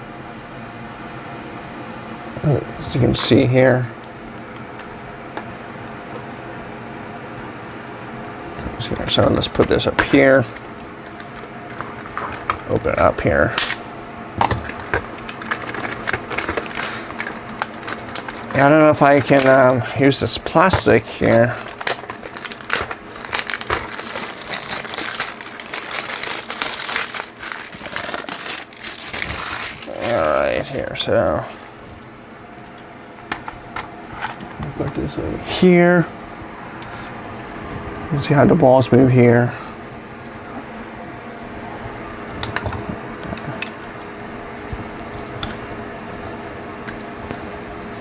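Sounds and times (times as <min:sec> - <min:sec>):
plastic packaging crinkling: 0:02.9 - 0:30.7.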